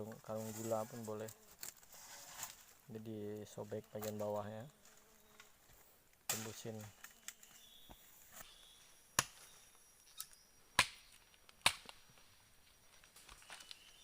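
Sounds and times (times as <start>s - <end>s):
wood being chopped: 9.2s - 9.5s, 10.8s - 12.0s.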